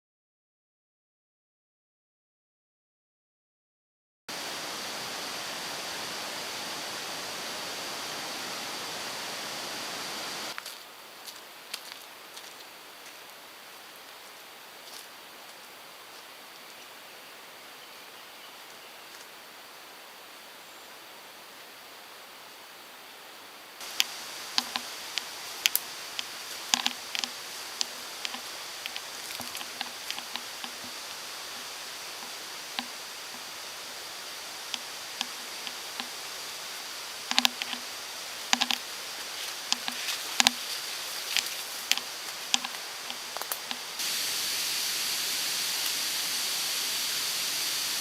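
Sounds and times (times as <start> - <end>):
thin high hiss: 4.3 - 10.6, 22.0 - 48.0
mountain stream rushing: 4.3 - 16.6, 23.6 - 48.0
sharp ticks and clicks: 23.8 - 33.8, 34.4 - 44.0.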